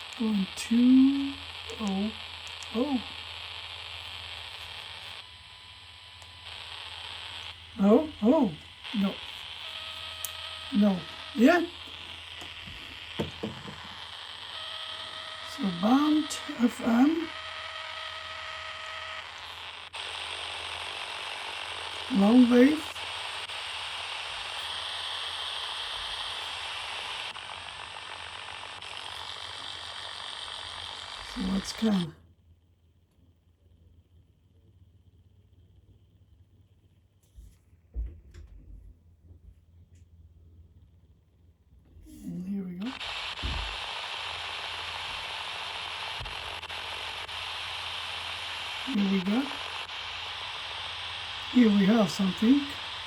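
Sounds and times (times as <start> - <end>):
radio static hiss: 0.0 - 32.2, 41.9 - 53.0
faint clicks: 2.4 - 2.8.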